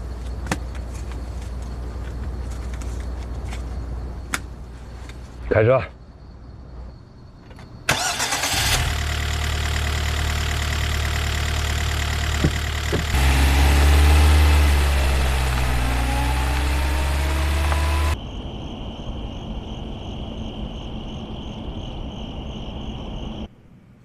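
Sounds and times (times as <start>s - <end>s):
car engine starting and running: 7.9s - 18.2s.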